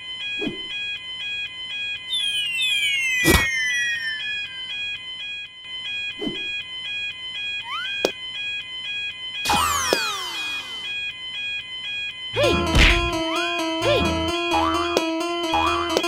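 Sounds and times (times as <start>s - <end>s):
falling whistle-like glides: 2.1s - 5.0s.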